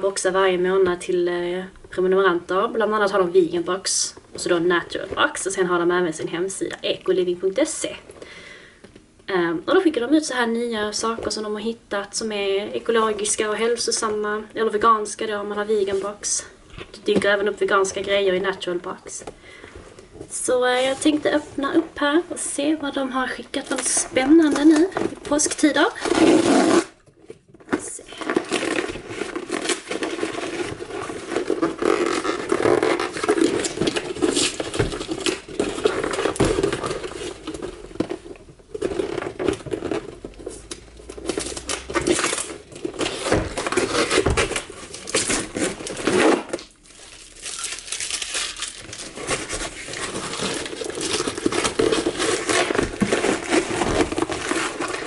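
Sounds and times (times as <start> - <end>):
packaging crinkling and tearing: 23.6 - 55.0.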